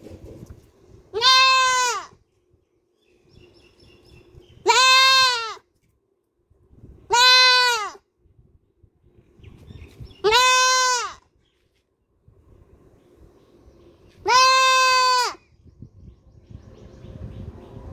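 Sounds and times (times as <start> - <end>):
goat bleating: 1.1 - 2.2, 4.6 - 5.6, 7.1 - 8.0, 10.2 - 11.2, 14.2 - 15.4.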